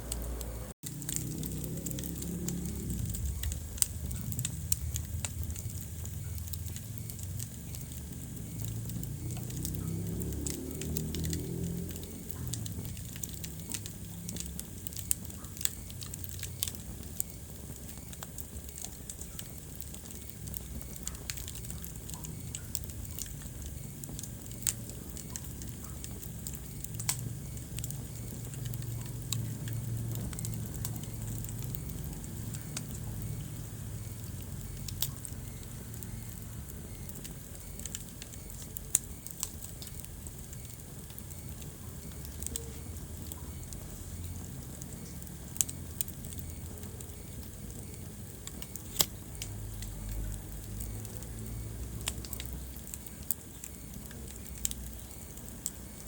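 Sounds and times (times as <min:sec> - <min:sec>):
low rumble of flames: 0:00.0 - 0:56.0
wood fire crackling and popping: 0:00.1 - 0:56.0.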